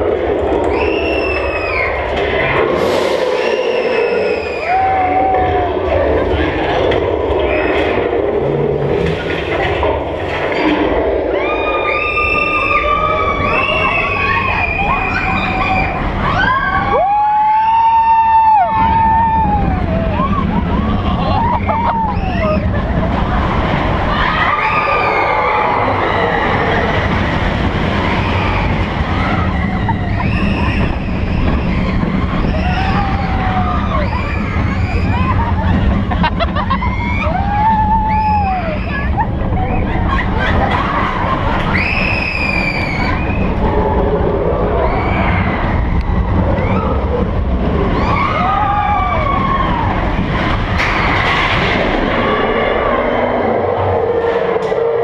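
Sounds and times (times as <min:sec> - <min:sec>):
roller coaster rumbling on track: 0:00.0 - 0:55.0
high squeals: 0:02.8 - 0:05.2, 0:24.1 - 0:35.6, 0:41.7 - 0:43.8.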